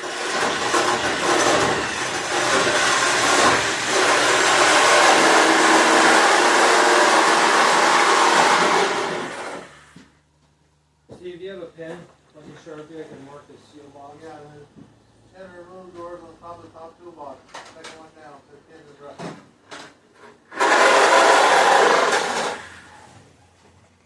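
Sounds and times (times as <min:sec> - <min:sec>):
machine motor whirring: 0:20.5 - 0:23.0.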